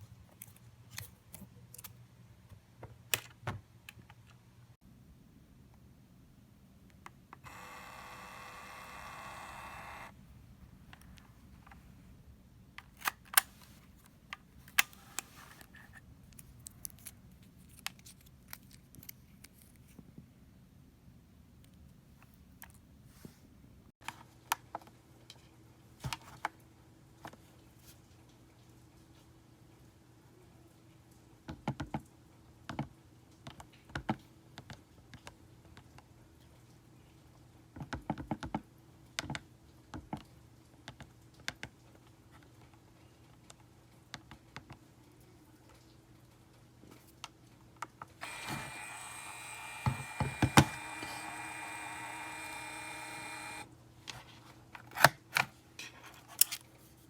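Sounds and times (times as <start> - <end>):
label maker clicks: 48.2 - 53.7.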